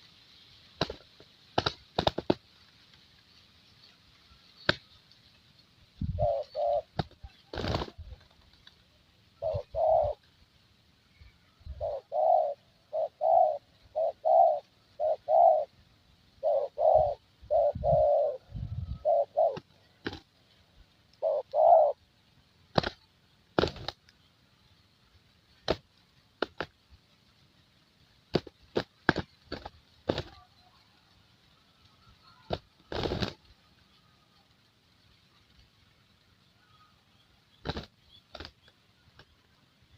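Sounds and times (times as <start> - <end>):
dove cooing: 6.0 - 8.4, 9.4 - 10.2, 11.6 - 15.8, 16.4 - 20.3, 21.2 - 22.1, 32.1 - 33.4.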